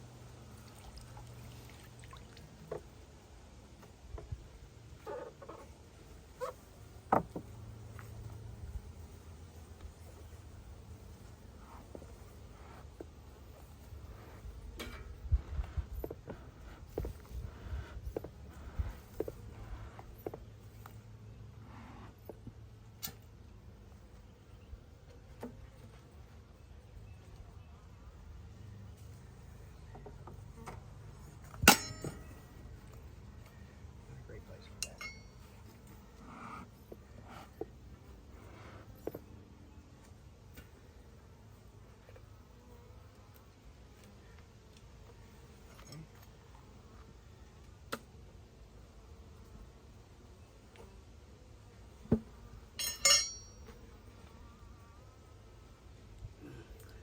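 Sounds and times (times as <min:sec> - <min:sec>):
honeybees buzzing: 0:00.0 - 0:21.6, 0:53.4 - 0:57.0.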